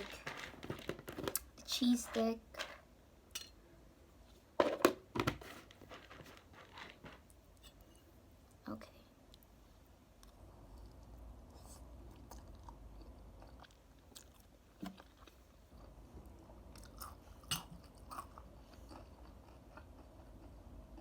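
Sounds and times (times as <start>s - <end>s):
chewing noodles: 10.2s - 21.0s.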